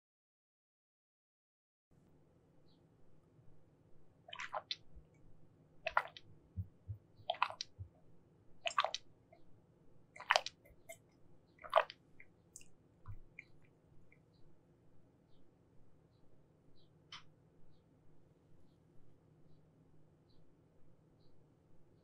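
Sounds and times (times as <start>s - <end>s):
moist squishy candy chewing: 4.3s - 4.8s, 5.9s - 7.9s, 8.6s - 9.0s, 10.2s - 13.5s.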